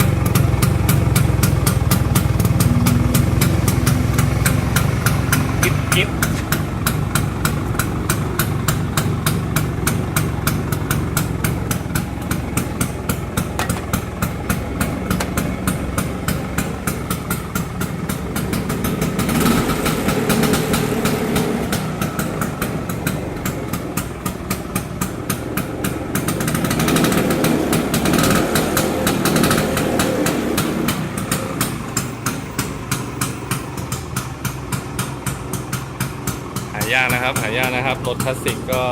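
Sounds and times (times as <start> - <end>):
scooter engine idling: 0.0 - 38.9.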